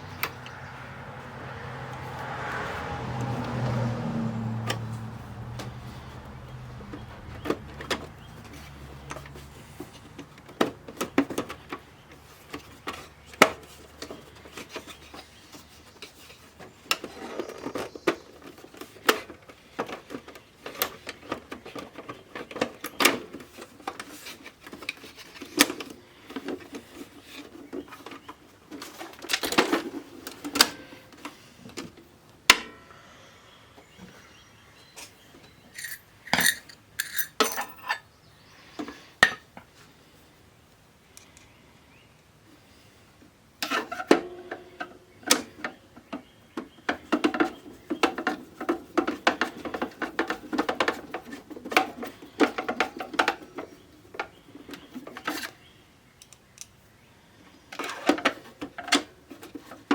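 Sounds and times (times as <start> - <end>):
tools and parts clicking on workbench: 4.6 - 32.8, 35.0 - 38.1, 43.6 - 55.6, 56.2 - 56.8, 57.7 - 59.9.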